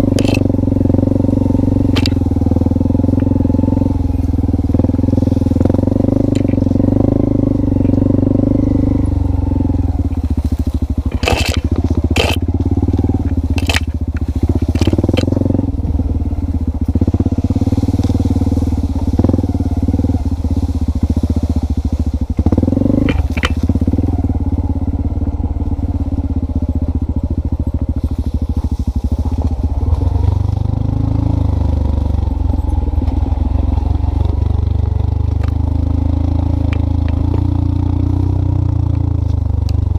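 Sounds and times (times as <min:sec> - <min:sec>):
engine running at low pitch: 0:00.0 - 0:39.9
sharp clicks: 0:00.1 - 0:00.5, 0:01.9 - 0:02.2, 0:11.1 - 0:12.4, 0:13.2 - 0:15.4.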